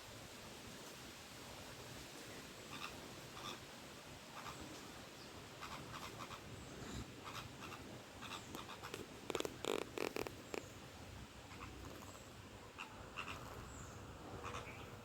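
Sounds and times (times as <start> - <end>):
small birds chirping: 4.4 - 15.0
wings fluttering and splashing: 7.3 - 10.7.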